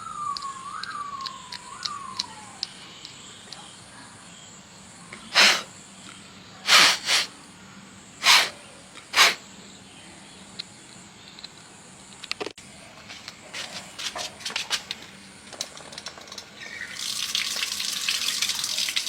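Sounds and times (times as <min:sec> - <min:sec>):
short hissing bursts: 0:05.3 - 0:05.7, 0:06.6 - 0:07.3, 0:08.2 - 0:09.4.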